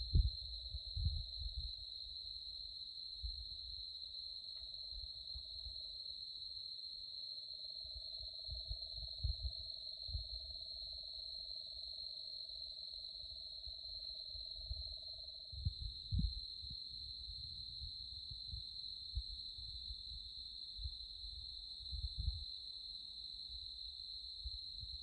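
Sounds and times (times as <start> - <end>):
low thumps on microphone: 0.0 - 1.7, 15.6 - 16.4
crickets trilling: 0.0 - 25.0.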